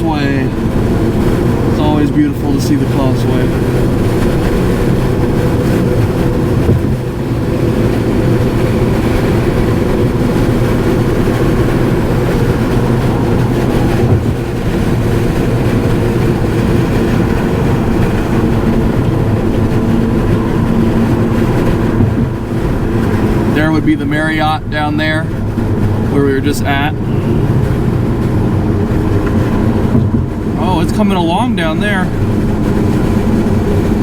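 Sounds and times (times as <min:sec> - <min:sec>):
car driving at speed: 0:00.0 - 0:34.0.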